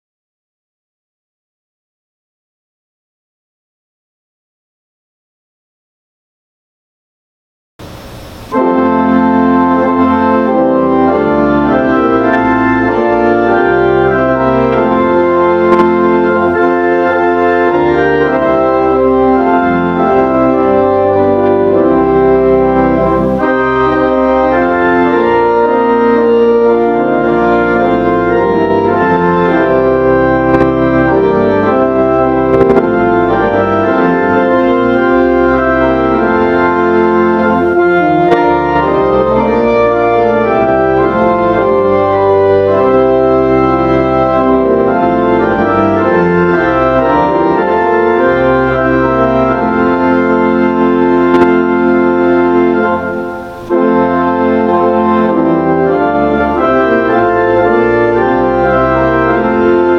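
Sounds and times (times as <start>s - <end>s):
organ playing slow chords: 7.8s - 59.9s.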